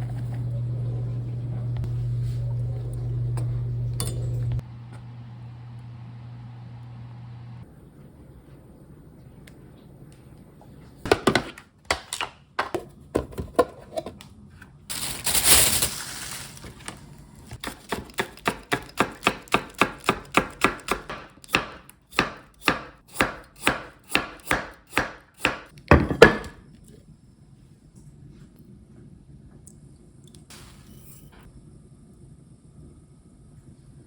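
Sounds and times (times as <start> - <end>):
knife chopping on cutting board: 17.6 - 26.6.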